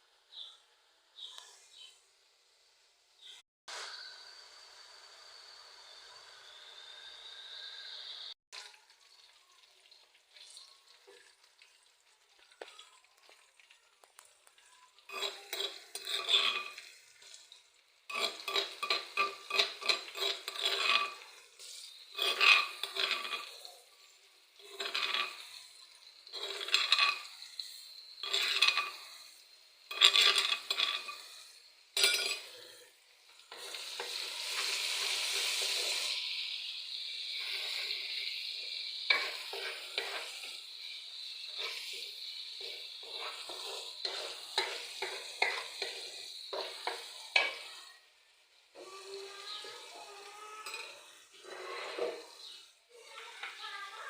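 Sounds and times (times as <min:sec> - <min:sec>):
frying sizzle: 0:01.2 - 0:54.0
spoon scraping a pan: 0:14.1 - 0:54.0.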